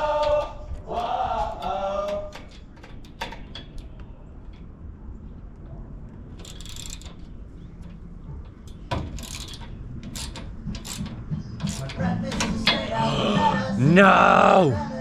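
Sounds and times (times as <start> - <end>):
hand tools clicking on metal: 6.4 - 12.9.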